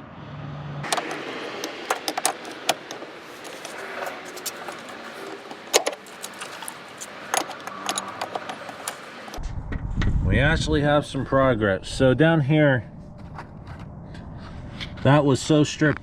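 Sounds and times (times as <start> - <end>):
hand tools clinking on metal: 0.9 - 9.4.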